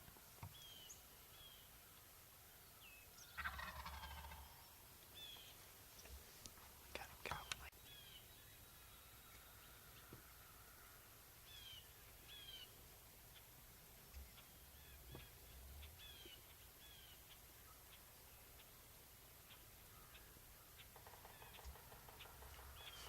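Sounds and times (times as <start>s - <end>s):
soft clicks: 6.0s - 7.7s.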